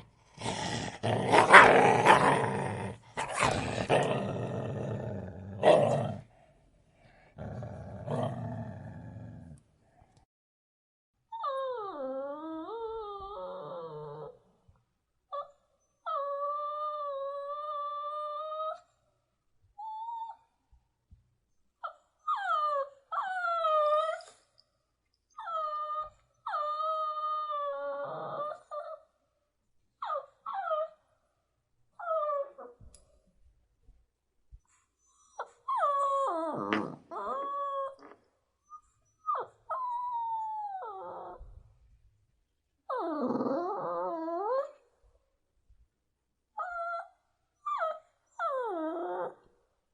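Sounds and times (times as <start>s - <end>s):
puppy whining: 11.3s - 14.5s, 15.3s - 18.9s, 19.8s - 20.6s, 21.8s - 24.5s, 25.3s - 29.1s, 30.0s - 31.1s, 32.0s - 33.2s, 34.6s - 41.9s, 42.8s - 45.0s, 46.6s - 49.5s.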